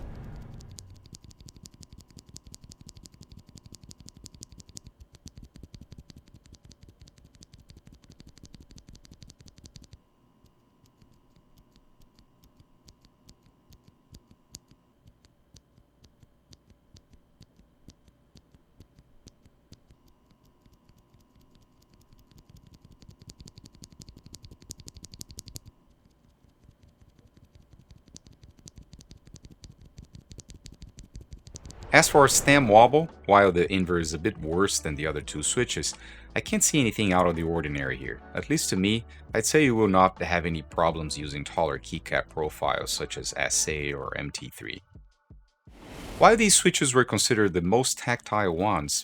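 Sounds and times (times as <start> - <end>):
faint high whine: 0.0 - 1.3, 31.5 - 34.0, 45.8 - 47.4
mechanical keyboard clicks: 0.0 - 31.8.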